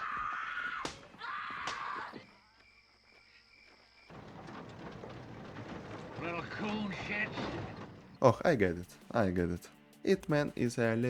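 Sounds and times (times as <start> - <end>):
woman screaming: 0.0 - 2.2.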